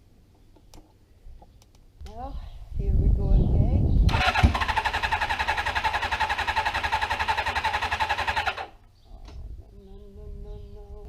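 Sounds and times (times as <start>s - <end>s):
engine cranking on starter: 4.1s - 8.8s.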